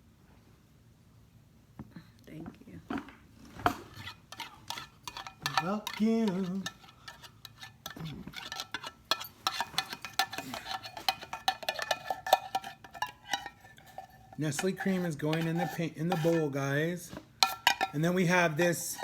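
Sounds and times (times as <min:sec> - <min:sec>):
metal spoon scraping a bowl: 0:03.6 - 0:19.0.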